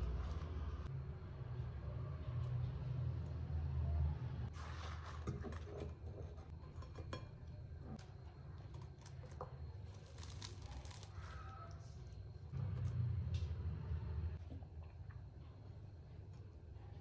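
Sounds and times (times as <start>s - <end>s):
material rustling and crinkling: 9.9s - 11.2s.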